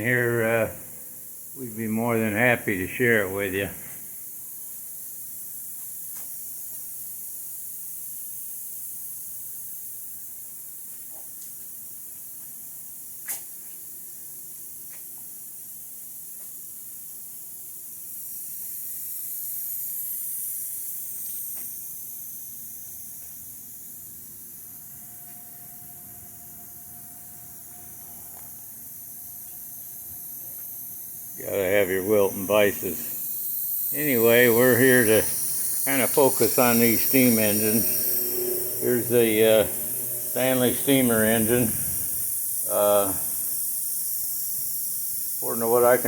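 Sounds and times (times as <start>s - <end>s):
high-pitched hiss: 0.0s - 46.0s
faint hum: 24.3s - 44.6s.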